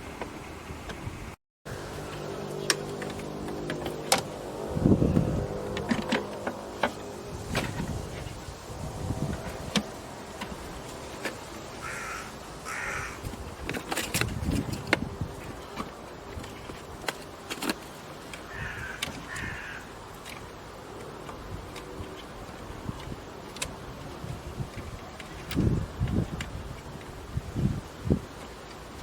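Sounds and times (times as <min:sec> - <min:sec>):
bird calling: 0:11.1 - 0:13.4, 0:18.4 - 0:19.9.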